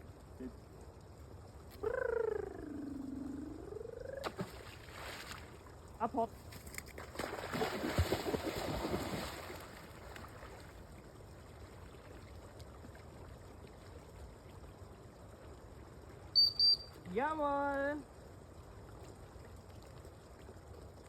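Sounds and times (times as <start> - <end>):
faint water and outdoor noise: 0.0 - 21.0
dog splashing into water: 4.2 - 5.6, 6.5 - 10.7.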